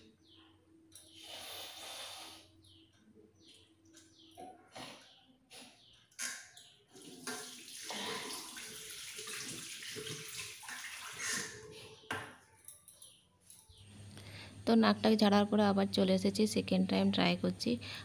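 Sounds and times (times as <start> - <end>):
person blowing nose: 1.2 - 2.4
tap water running into basin: 6.9 - 11.6.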